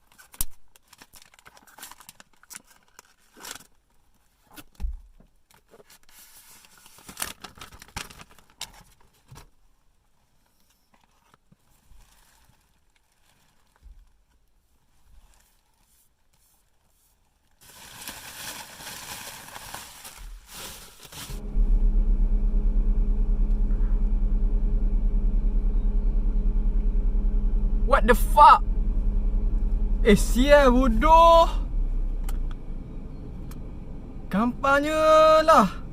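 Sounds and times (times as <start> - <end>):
plastic wrap crinkling: 0.0 - 4.2, 6.3 - 9.3, 11.6 - 15.8, 17.5 - 21.4
loud low hum: 21.3 - 35.9.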